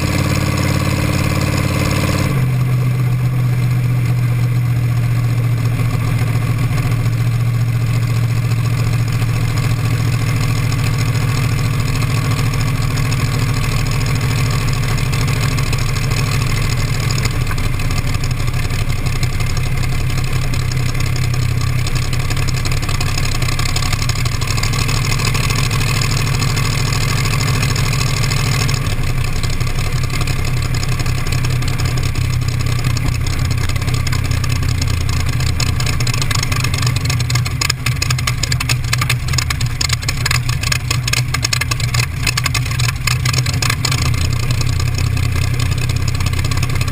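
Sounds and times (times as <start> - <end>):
car engine idling: 0.0 - 46.9.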